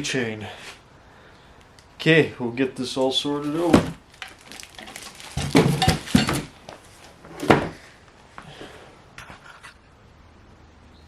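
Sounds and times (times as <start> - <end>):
metal parts clattering: 4.2 - 6.5.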